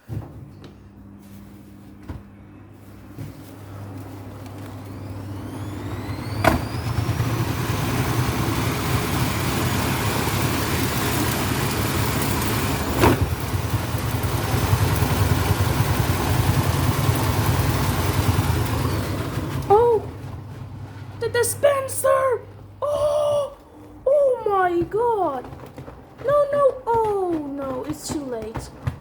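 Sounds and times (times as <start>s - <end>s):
washing machine drum spinning: 3.2s - 22.8s.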